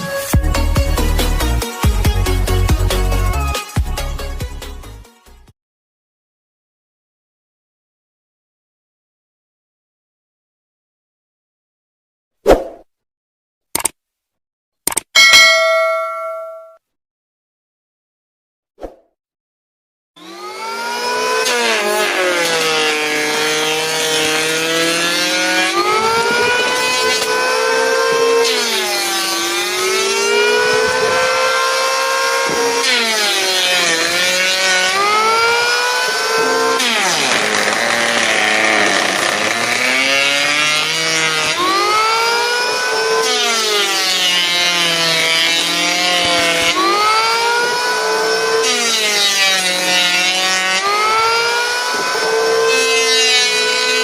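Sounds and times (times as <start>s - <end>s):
wood planer cutting: 20.2s - 54.0s.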